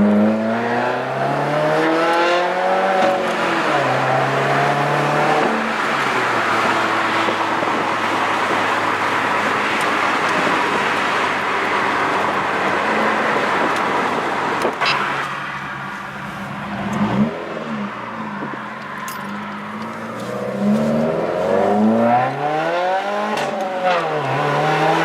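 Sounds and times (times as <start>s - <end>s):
car engine driving: 0.0s - 25.0s
road noise: 0.0s - 25.0s.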